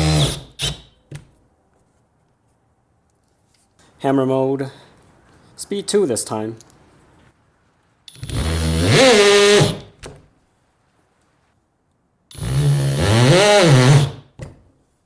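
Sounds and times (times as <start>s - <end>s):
hammer drill drilling: 0.0s - 0.8s, 8.1s - 9.9s, 12.3s - 14.2s.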